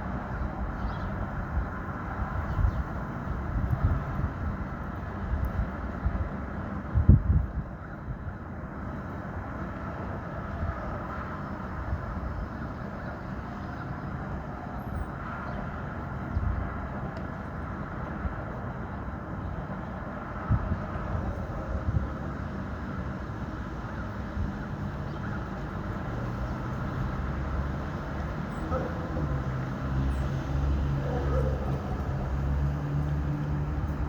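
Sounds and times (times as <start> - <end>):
traffic rumble: 0.0 - 34.0
vehicle engine low hum: 24.0 - 34.0.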